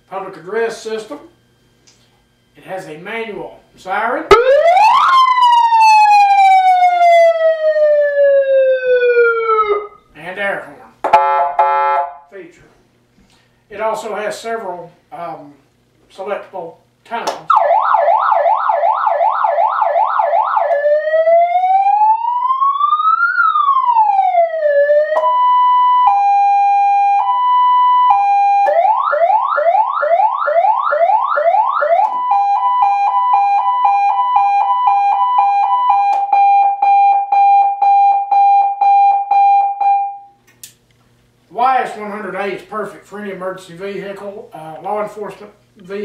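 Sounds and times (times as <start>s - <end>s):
electronic siren: 4.3s - 10.1s, 11.1s - 12.3s, 17.5s - 40.4s.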